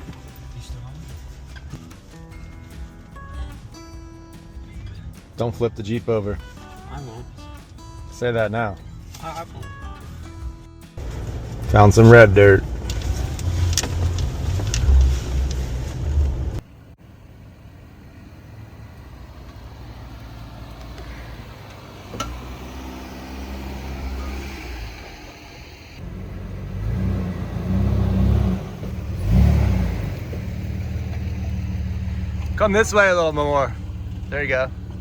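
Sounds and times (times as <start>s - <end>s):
car engines revving: 11.0s - 35.0s.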